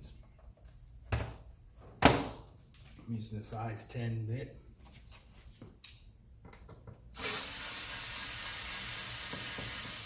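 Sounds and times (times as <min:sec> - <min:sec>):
screwdriver hissing whirr: 0:07.2 - 0:10.0.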